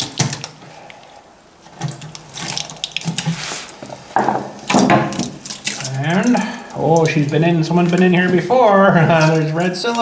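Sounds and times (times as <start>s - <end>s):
oil splashing and trickling: 0.0s - 10.0s
small knocks: 4.2s - 5.9s.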